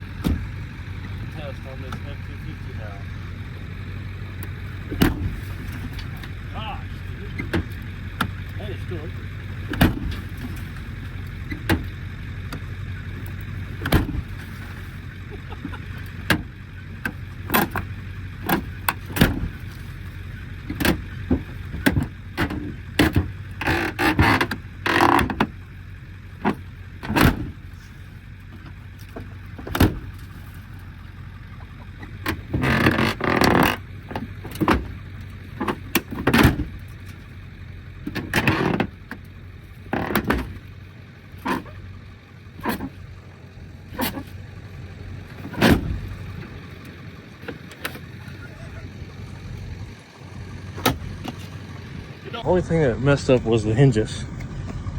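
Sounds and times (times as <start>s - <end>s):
rattling clatter: 0.0s - 52.4s
truck door slamming: 0.1s - 0.6s, 4.8s - 8.8s, 9.6s - 14.8s, 15.4s - 19.9s, 20.6s - 25.6s, 26.4s - 27.9s, 28.6s - 30.3s, 31.6s - 37.2s, 38.0s - 39.2s, 39.8s - 40.8s, 45.0s - 48.2s, 48.8s - 52.2s.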